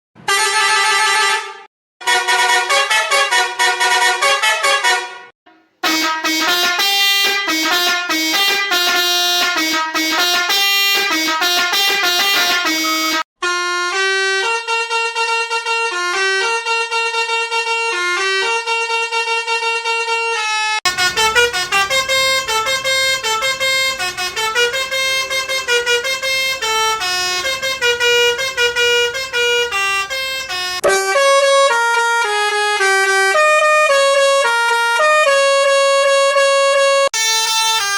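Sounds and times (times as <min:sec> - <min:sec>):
musical air horn melodies: 0:00.2 - 0:37.9.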